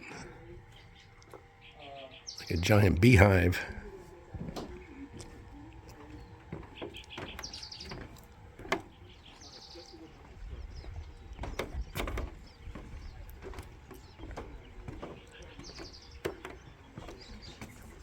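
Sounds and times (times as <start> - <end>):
songbird trilling: 6.8 - 8.2.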